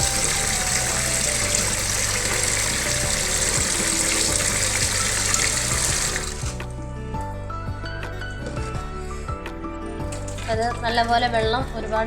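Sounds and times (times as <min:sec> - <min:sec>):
water pouring through a sieve: 0:00.0 - 0:06.6, 0:10.1 - 0:10.8.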